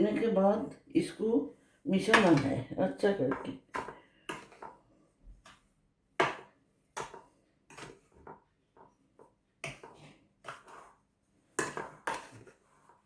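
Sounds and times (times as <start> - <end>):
utensil scraping a bowl: 9.6 - 11.0, 11.6 - 13.0.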